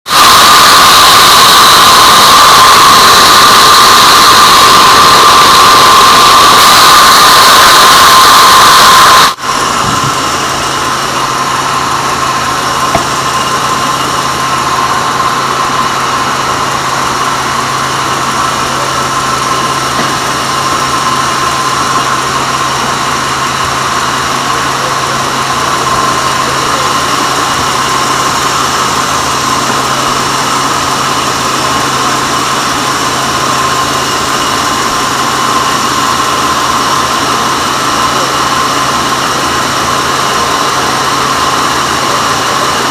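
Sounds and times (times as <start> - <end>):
bandsaw running: 0.0 - 42.9.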